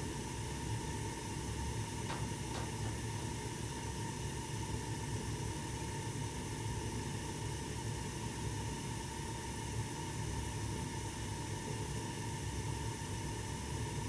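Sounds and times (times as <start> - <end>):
gas furnace humming: 0.0 - 6.1.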